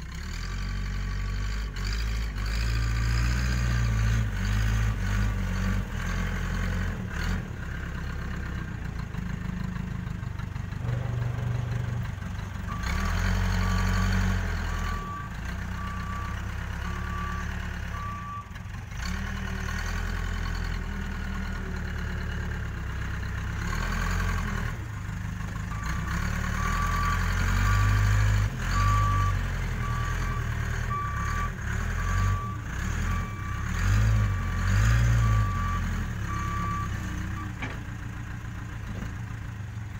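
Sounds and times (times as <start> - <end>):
diesel engine running under load: 0.0 - 39.9
reversing alarm beeping: 25.7 - 37.7.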